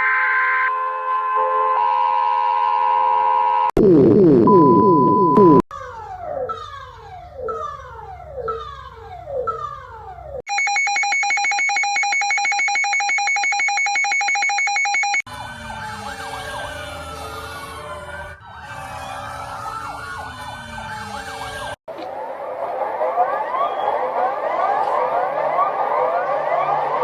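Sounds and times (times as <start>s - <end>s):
siren sweep: 0.0s - 5.6s, 11.4s - 27.0s
electronic alarm tone pulsing: 3.8s - 5.6s, 10.5s - 15.3s
sirens wailing: 12.0s - 27.0s.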